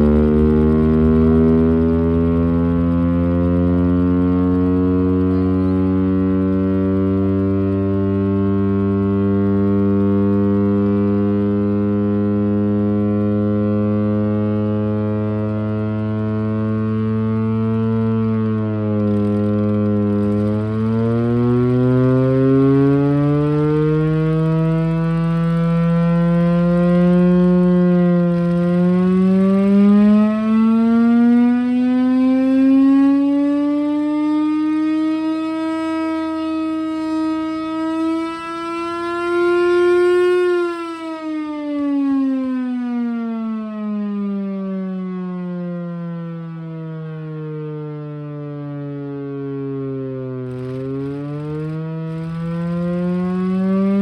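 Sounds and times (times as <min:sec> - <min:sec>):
air raid siren wailing: 0:00.0 - 0:54.0.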